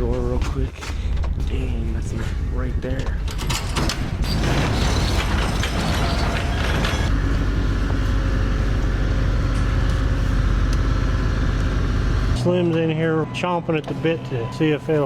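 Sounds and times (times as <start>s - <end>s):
vehicle engine rumbling: 0.0s - 15.0s
rattling and clatter: 2.1s - 7.2s.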